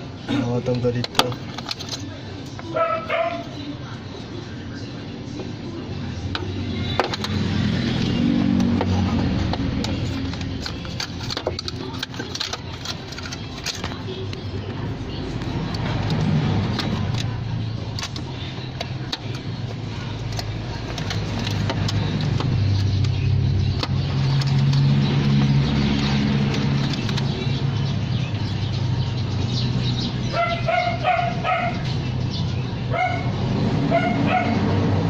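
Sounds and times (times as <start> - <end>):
vehicle engine droning: 0.0 - 35.0
dog yipping: 2.7 - 3.5, 30.3 - 31.9, 32.9 - 33.3, 33.9 - 34.6.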